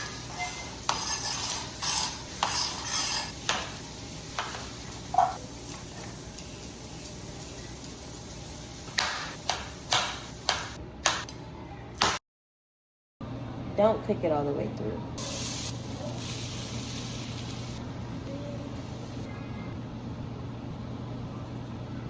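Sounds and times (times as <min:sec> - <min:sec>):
utensils clacking against pan: 0:00.0 - 0:06.1.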